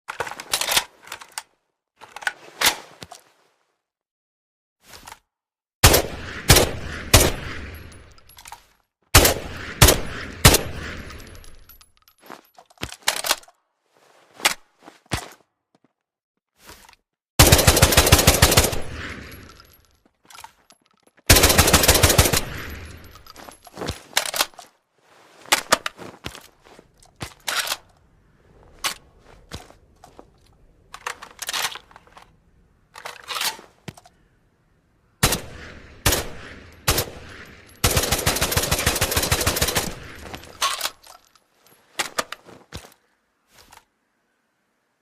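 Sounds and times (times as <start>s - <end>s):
rifle single shots with echo: 5.8s - 8.1s, 9.2s - 11.5s, 35.2s - 40.5s
automatic gunfire bursts: 17.4s - 19.0s, 21.3s - 22.6s, 37.8s - 40.1s.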